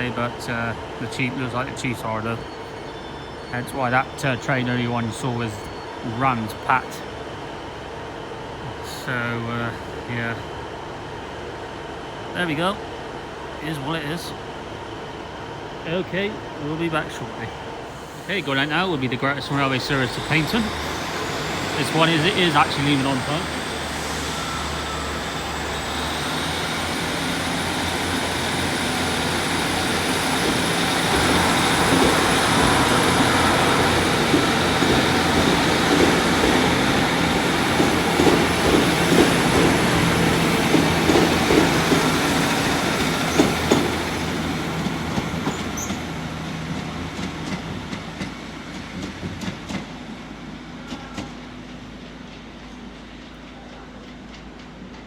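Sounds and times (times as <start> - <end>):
diesel train passing: 0.0 - 55.0
wheels clicking over rail joints: 25.8 - 50.1.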